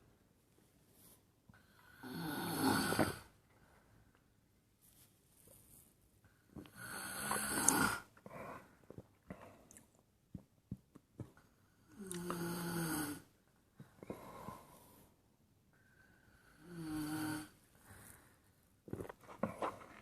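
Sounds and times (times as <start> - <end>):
person snoring: 1.6 - 3.3, 6.7 - 8.1, 11.8 - 13.3, 16.4 - 17.6.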